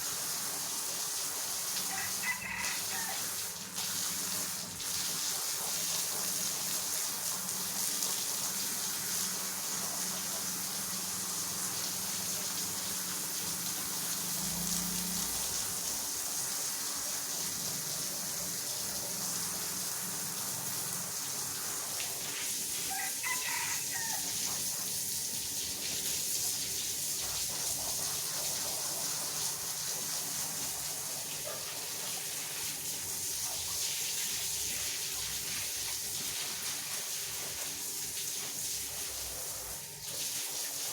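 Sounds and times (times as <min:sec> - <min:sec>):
rooster crowing: 0:01.9 - 0:03.4, 0:22.9 - 0:24.5.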